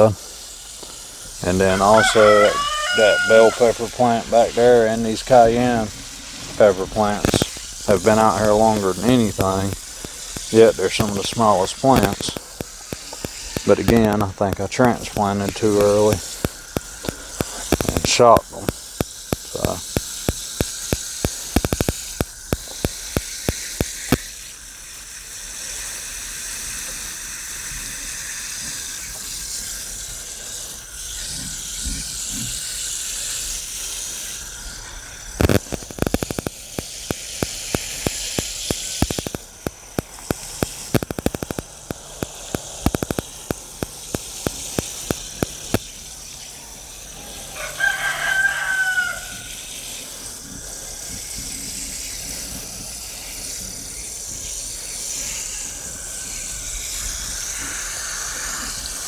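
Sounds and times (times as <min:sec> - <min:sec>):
sharp microphone interference clicks: 0:00.0 - 0:24.6, 0:28.6 - 0:47.1
steady hiss: 0:00.0 - 0:59.0
rooster crowing: 0:01.4 - 0:05.3, 0:47.2 - 0:49.6.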